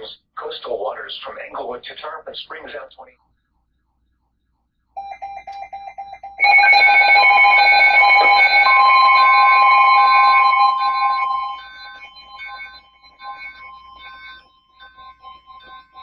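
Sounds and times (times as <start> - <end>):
fast-pulsing beep: 5.0 - 16.0
weather radio alarm tones: 6.2 - 16.0.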